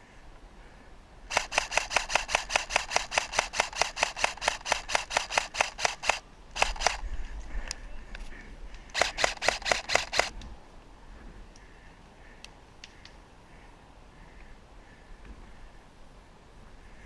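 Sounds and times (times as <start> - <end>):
airsoft rifle firing clicking shots: 1.3 - 7.0, 8.9 - 10.3.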